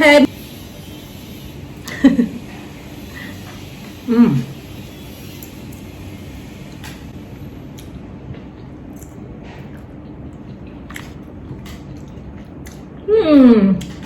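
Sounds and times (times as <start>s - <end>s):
low room hum: 0.0s - 14.0s
person chewing food: 7.7s - 13.1s, 13.8s - 14.0s.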